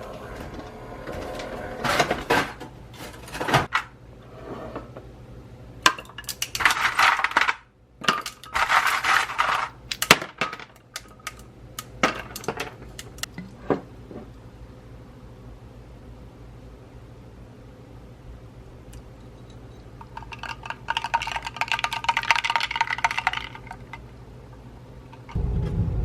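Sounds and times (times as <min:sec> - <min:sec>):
small hard objects clinking: 0:05.9 - 0:13.3, 0:19.3 - 0:24.0.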